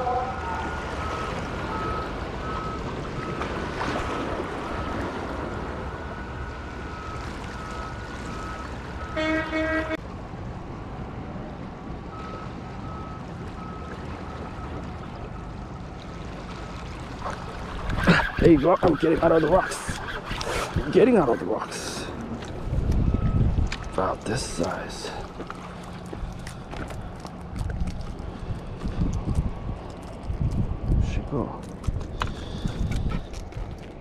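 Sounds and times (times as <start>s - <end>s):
wind: 0.0s - 34.0s
short loud horn tone: 9.0s - 10.0s
surf: 16.7s - 22.8s.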